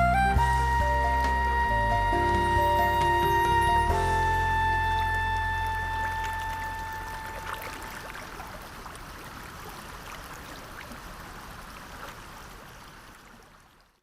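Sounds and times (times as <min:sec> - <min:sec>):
stream babbling over rocks: 0:03.8 - 0:14.0.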